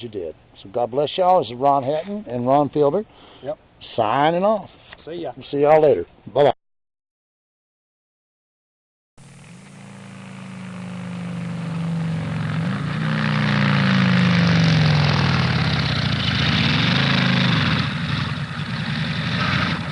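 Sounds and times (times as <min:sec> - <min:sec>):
vehicle engine running: 0:09.2 - 0:19.9.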